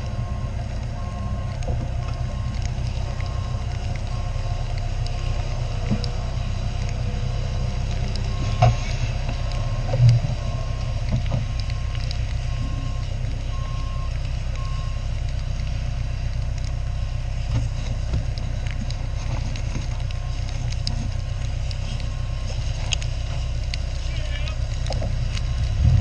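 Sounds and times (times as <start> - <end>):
low rumble: 0.0 - 26.0.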